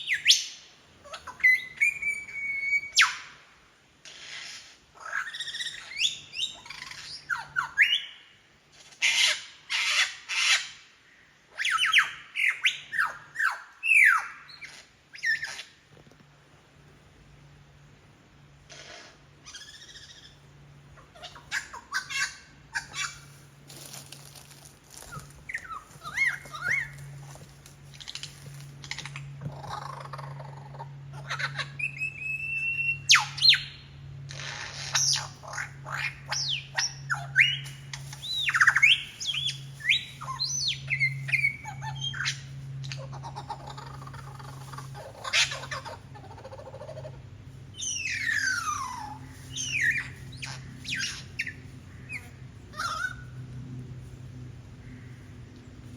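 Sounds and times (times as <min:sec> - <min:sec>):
lyrebird mimicking bird calls: 0:24.9 - 0:33.7, 0:34.3 - 0:53.4.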